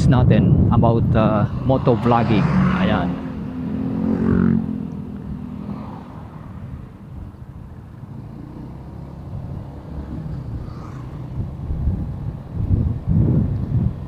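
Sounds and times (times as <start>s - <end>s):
wind rumble on microphone: 0.0s - 14.0s
motorcycle running: 0.8s - 14.0s.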